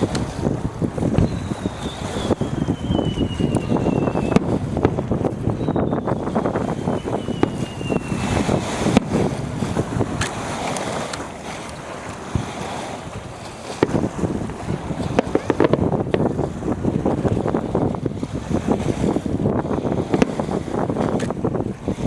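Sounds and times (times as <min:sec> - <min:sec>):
wind buffeting microphone: 0:00.0 - 0:22.0
fireworks banging and crackling: 0:01.1 - 0:09.2, 0:15.0 - 0:15.8
thin falling whistle: 0:01.2 - 0:04.5, 0:05.5 - 0:08.4.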